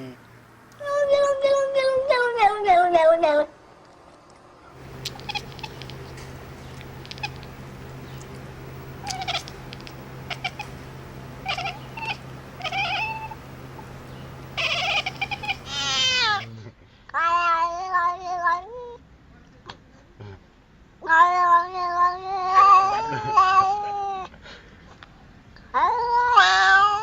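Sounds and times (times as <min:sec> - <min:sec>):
steady low hum: 0:04.7 - 0:16.7
cat meowing: 0:04.8 - 0:16.5.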